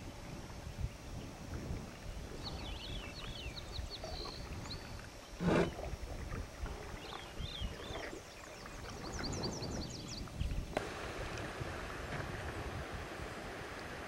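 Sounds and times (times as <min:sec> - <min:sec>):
low wind rumble: 0:00.0 - 0:14.0
songbirds singing: 0:02.0 - 0:06.0, 0:06.7 - 0:10.8.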